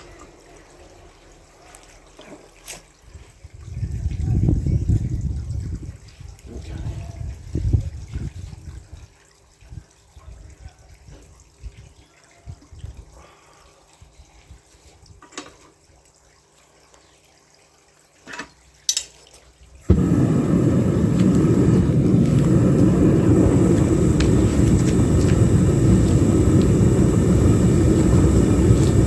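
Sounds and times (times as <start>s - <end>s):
furnace burner rushing: 19.9s - 29.0s.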